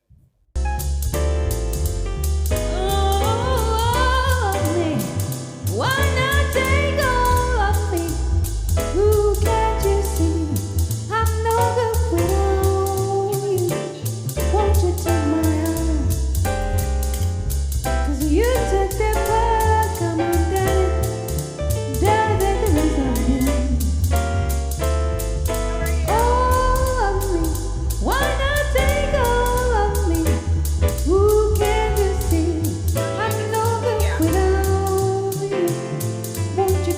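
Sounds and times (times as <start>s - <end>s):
strong bass: 0.0s - 36.9s
steady drum beat: 0.6s - 36.9s
song with singing voice: 18.0s - 24.4s, 25.8s - 36.9s.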